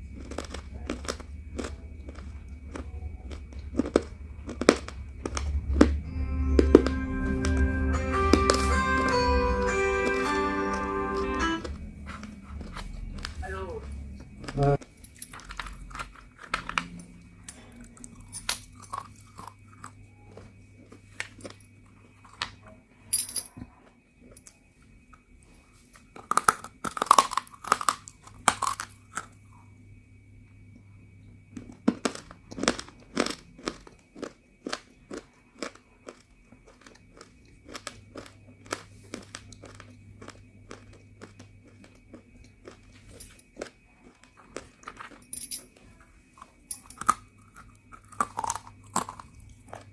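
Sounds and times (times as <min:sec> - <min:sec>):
clay being bitten and chewed: 0:00.0 - 0:06.0, 0:11.6 - 0:16.9, 0:26.0 - 0:29.4, 0:31.6 - 0:49.9.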